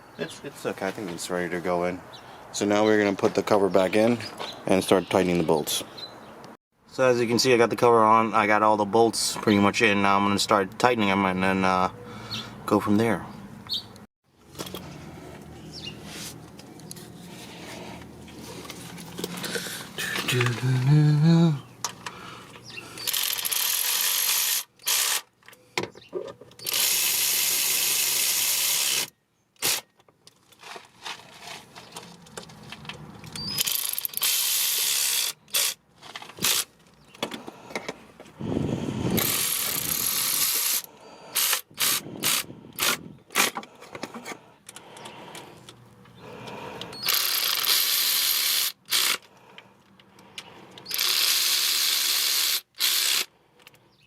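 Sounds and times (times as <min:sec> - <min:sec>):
ratchet wrench clicking: 0:23.0 - 0:25.3, 0:26.6 - 0:29.8, 0:33.3 - 0:35.8, 0:39.2 - 0:43.0, 0:46.9 - 0:49.3, 0:50.8 - 0:53.3.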